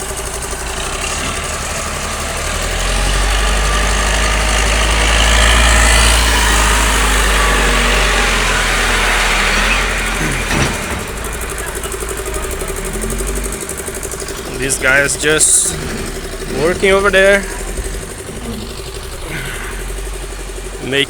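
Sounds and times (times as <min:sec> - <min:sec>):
truck engine running: 0:00.0 - 0:21.0.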